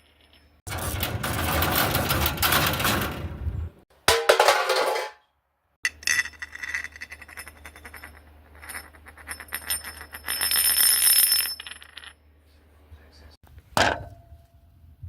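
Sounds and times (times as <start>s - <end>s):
metal rattling and jingling: 0.0s - 5.2s, 5.9s - 12.2s.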